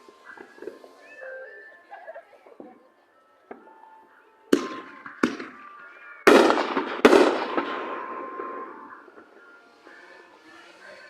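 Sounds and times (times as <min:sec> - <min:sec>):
fireworks bangs: 0:00.0 - 0:01.2, 0:04.5 - 0:10.3
long echo of bangs: 0:04.5 - 0:05.6, 0:06.3 - 0:09.3.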